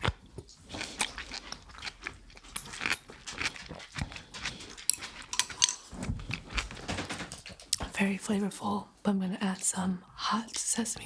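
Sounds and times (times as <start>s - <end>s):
biting and chewing: 0.0s - 7.9s.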